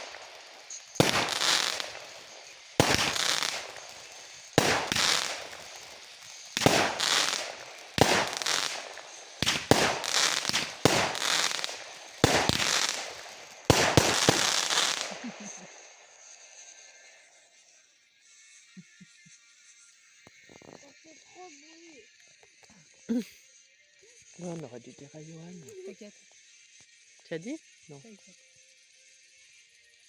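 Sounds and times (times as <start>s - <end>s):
fireworks bangs: 0.0s - 16.0s.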